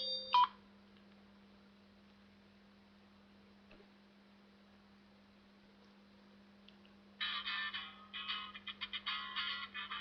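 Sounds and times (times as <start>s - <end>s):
cellphone ringtone: 0.0s - 0.5s.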